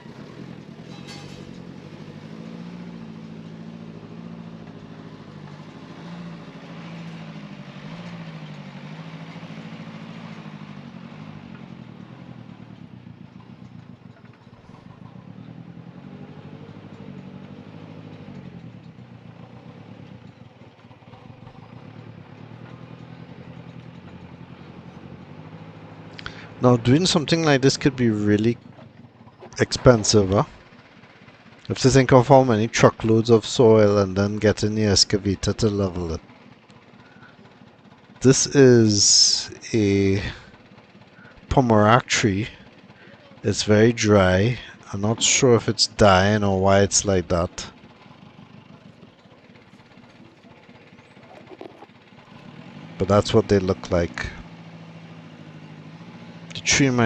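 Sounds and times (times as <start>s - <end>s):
heavy machinery diesel engine: 0.0s - 57.0s.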